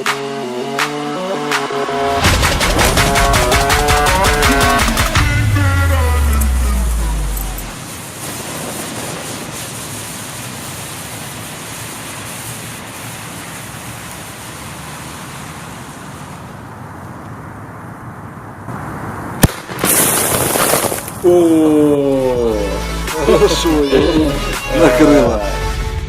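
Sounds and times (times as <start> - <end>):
firecracker fuse hissing: 0.0 - 16.7, 19.4 - 25.7
loud rush of noise: 0.0 - 25.5
firecracker bang: 1.4 - 6.1, 7.5 - 13.6, 18.7 - 21.4.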